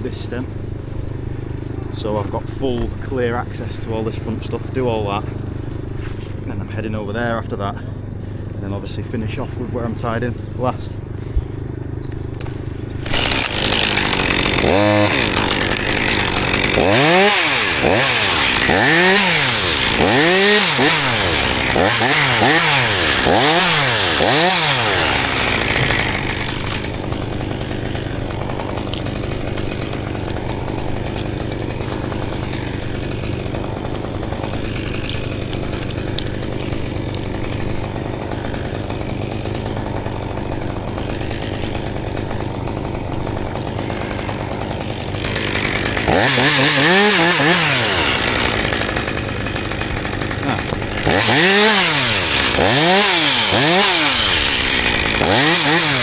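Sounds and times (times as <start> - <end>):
chainsaw engine revving and idling: 0.0 - 56.0.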